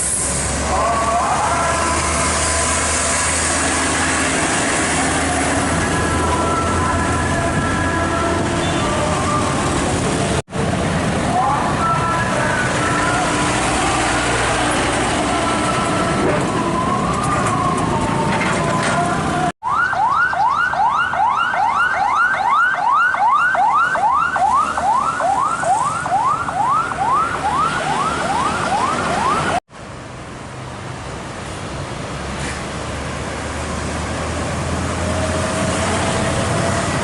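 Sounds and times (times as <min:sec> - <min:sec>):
large engine humming: 0:00.0 - 0:19.5, 0:26.2 - 0:37.0
heavy vehicle and road noise: 0:00.0 - 0:37.0
traffic rushing: 0:00.0 - 0:37.0
electronic siren yelping: 0:16.7 - 0:29.6.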